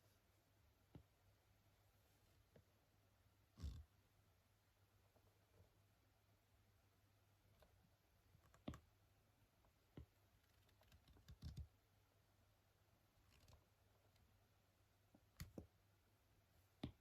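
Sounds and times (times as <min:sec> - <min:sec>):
soft clicks and taps: 0:15.1 - 0:15.8, 0:16.8 - 0:17.0.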